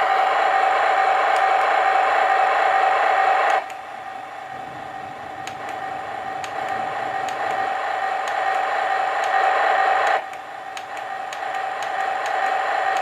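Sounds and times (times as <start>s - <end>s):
simulated tank engine through speaker: 4.4s - 13.0s.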